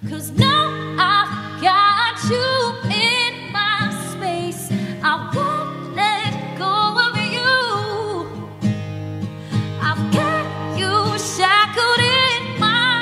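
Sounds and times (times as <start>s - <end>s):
acoustic guitar: 0.0s - 13.0s
person singing: 9.8s - 13.0s.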